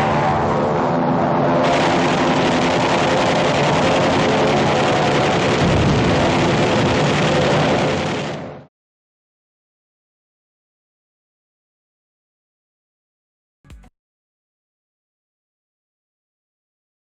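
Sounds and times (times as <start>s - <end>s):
piston aircraft engines droning: 0.0s - 8.7s.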